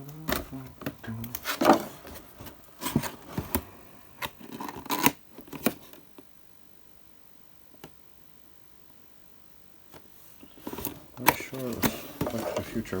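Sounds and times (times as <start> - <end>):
cardboard and plastic packaging handled: 0.0 - 6.2, 10.0 - 13.0.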